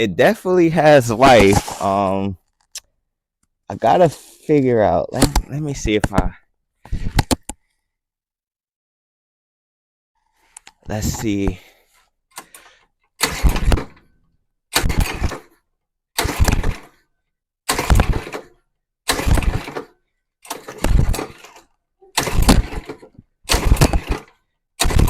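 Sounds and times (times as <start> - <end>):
small engine pull-started: 12.4 - 14.0, 14.7 - 15.6, 16.2 - 17.0, 17.7 - 25.0.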